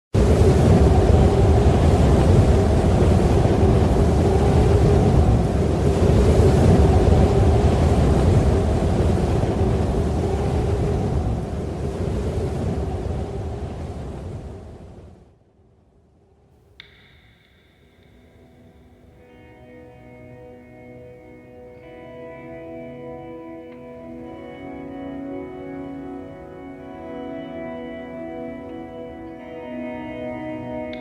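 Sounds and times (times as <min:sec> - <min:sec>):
strong wind howling: 0:00.1 - 0:31.0
wind gusts buffeting microphone: 0:00.2 - 0:15.3.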